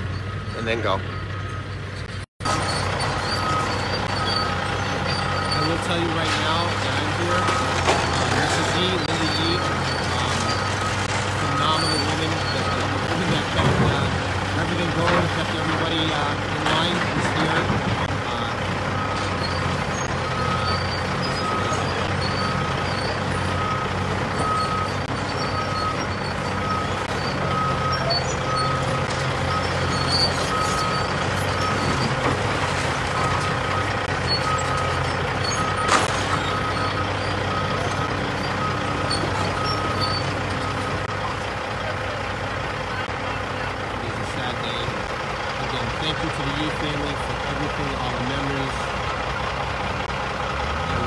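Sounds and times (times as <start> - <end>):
reversing alarm beeping: 0.0 - 17.7, 18.3 - 32.3, 33.2 - 41.3
diesel engine of heavy machinery: 0.0 - 51.0.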